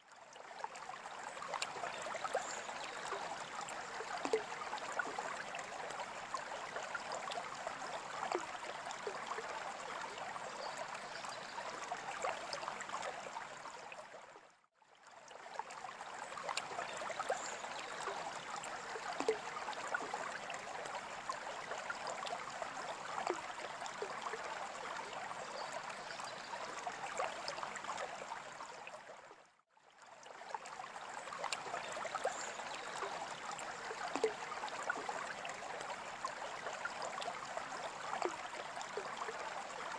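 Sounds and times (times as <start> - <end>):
drip-like splashes: 0.5 - 14.1, 15.5 - 28.4, 30.2 - 39.9
aquarium water trickling: 15.4 - 28.4, 30.2 - 39.9.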